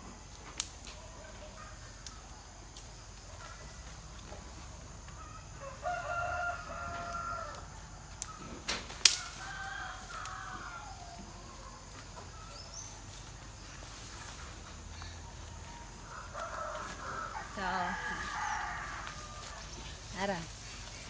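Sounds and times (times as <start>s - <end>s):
rooster crowing: 5.1s - 12.8s, 15.0s - 20.4s.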